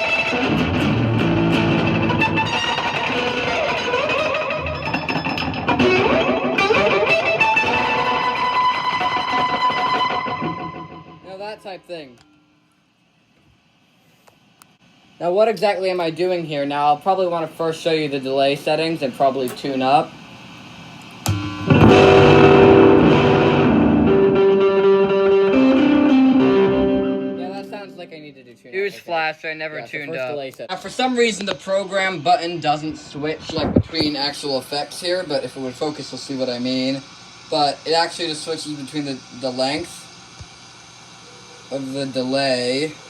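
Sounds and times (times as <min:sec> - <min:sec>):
overdriven electric guitar with delay: 0:00.0 - 0:11.3, 0:21.3 - 0:28.1.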